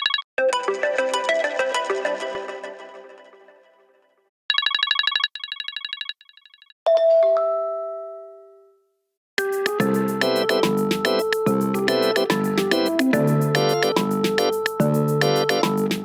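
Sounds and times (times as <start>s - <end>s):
electronic ringtone melody: 9.4s - 16.0s.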